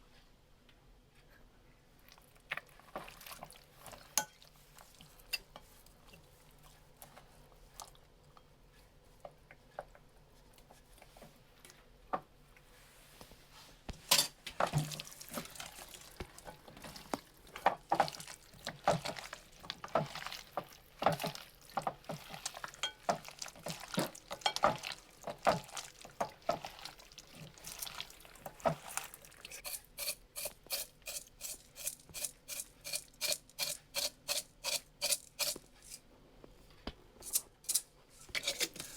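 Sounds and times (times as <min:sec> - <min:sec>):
utensils and dishes clinking: 0:37.2 - 0:38.9.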